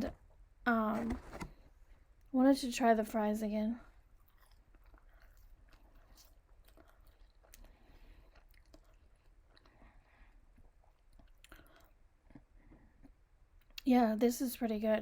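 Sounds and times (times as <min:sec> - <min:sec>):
faint chewing of fries: 0:03.8 - 0:13.9.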